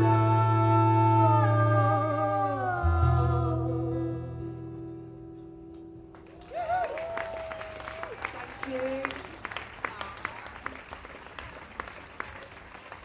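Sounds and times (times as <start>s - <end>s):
person singing: 0.0s - 4.7s
crowd cheering: 6.1s - 13.0s.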